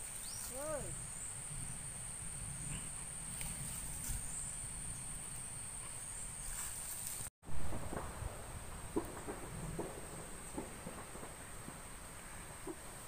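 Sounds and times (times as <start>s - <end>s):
insects trilling: 0.0s - 7.3s.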